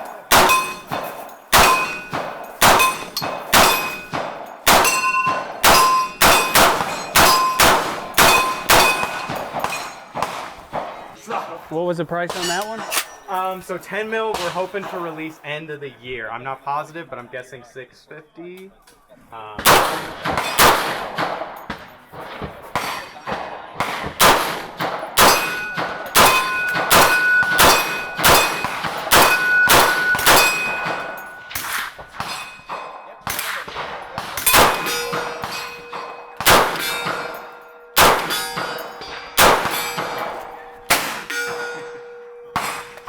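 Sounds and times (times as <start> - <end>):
gunshots: 0.0 - 13.3, 14.1 - 15.4, 19.6 - 43.0
steel targets clanging: 0.0 - 15.4, 24.5 - 43.0.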